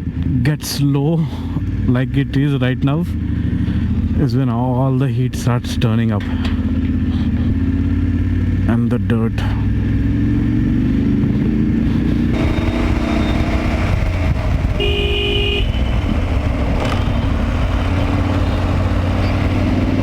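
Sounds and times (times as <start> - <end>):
motorcycle engine running: 1.2 - 20.0
vehicle horn honk: 12.4 - 13.9, 14.6 - 16.3.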